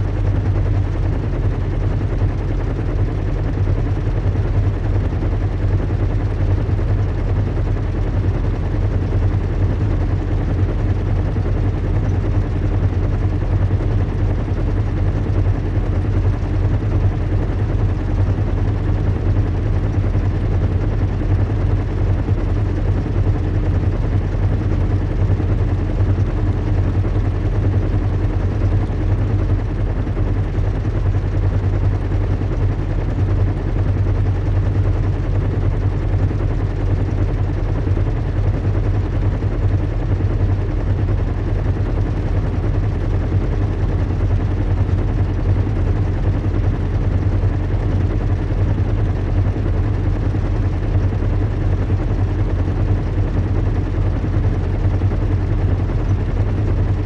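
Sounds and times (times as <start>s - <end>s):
low engine hum and rumble: 0.0s - 57.0s.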